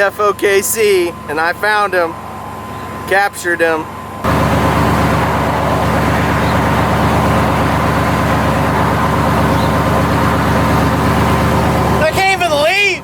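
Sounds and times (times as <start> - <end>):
constant hum: 0.0 - 13.0
car engine rumble: 4.2 - 13.0.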